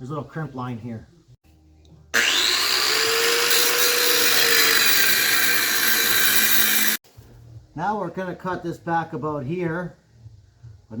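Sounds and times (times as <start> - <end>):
power cutting tool whine: 2.2 - 7.0.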